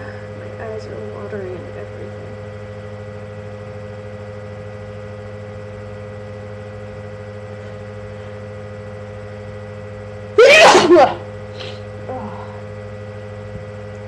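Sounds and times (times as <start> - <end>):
steady background hum: 0.0 - 14.0
person sneezing: 10.4 - 12.6.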